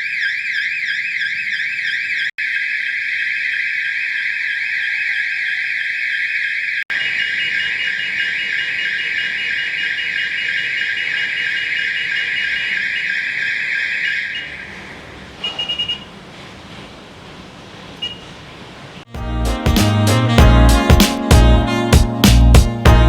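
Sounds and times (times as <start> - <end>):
fire alarm sounding: 0.0 - 16.1
quick beeps: 15.4 - 16.1.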